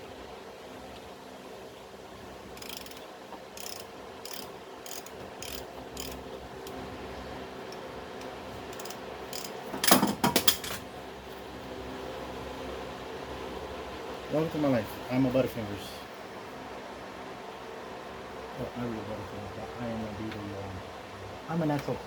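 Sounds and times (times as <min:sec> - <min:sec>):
socket ratchet clicking: 0:02.6 - 0:06.2, 0:08.7 - 0:09.6.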